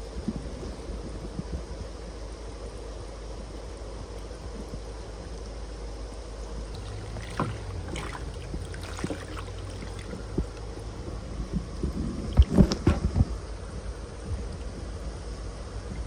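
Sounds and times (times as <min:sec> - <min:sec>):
low background noise: 0:00.0 - 0:16.0
water sloshing in a tub: 0:04.0 - 0:16.0
short sharp splashes: 0:06.7 - 0:10.8.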